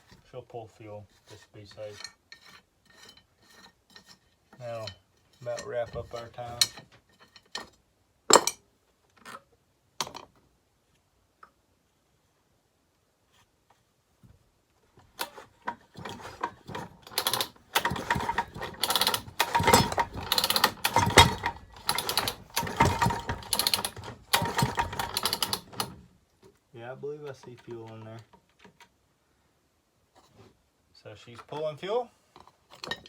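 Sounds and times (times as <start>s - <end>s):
chainsaw recoil starter ratcheting: 15.2s - 26.0s.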